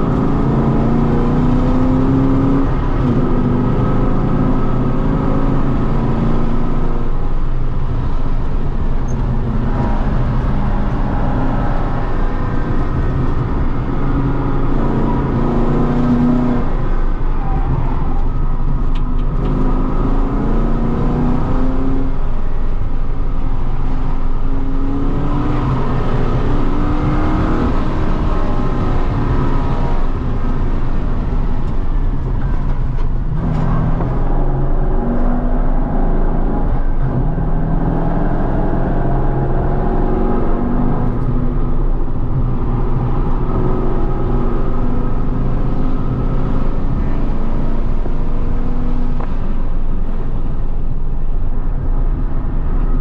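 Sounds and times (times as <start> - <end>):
engine revving through gears: 0.0 - 7.0, 9.1 - 17.0, 17.6 - 22.2, 24.4 - 30.8.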